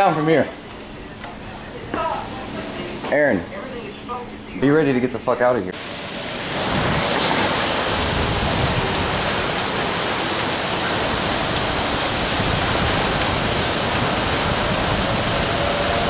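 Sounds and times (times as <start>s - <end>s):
gusts buffeting microphone: 6.2s - 16.0s
storm wind rushing: 6.2s - 16.0s.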